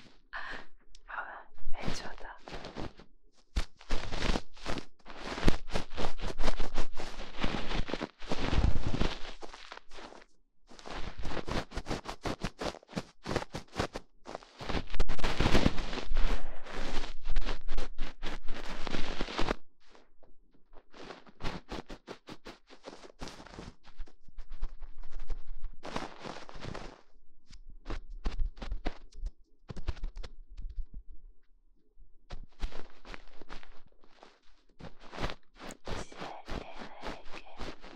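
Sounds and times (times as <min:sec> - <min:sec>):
rubbing on microphone: 0:01.8 - 0:20.1, 0:20.7 - 0:31.0, 0:32.3 - 0:37.9.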